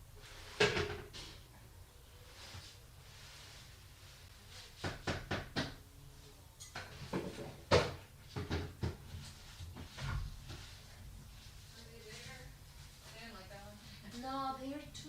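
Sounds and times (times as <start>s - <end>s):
knocks and clunks of handled objects: 6.6s - 10.7s.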